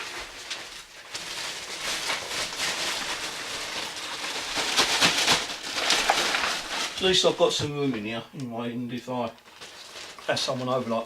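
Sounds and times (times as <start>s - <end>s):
household things rustling and scraping: 0.0s - 8.2s.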